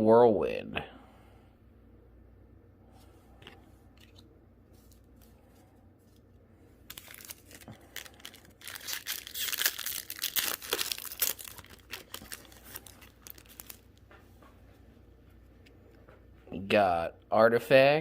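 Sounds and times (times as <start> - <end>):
foil wrapper tearing and crinkling: 6.9 - 13.9.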